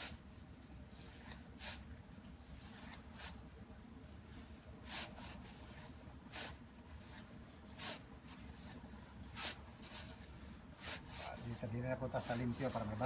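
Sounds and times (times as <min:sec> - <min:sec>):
rag rubbing motorcycle chain: 0:10.8 - 0:13.0.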